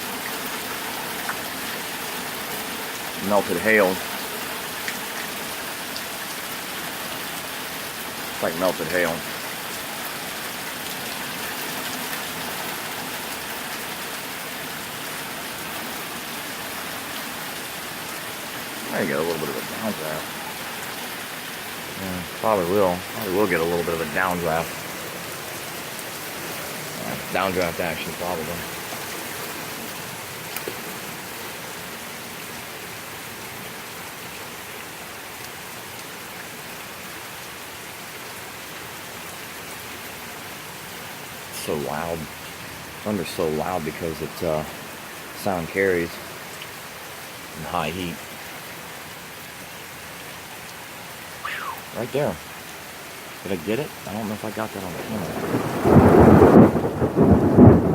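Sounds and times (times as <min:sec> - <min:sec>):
heavy rain falling: 0:00.0 - 0:57.9.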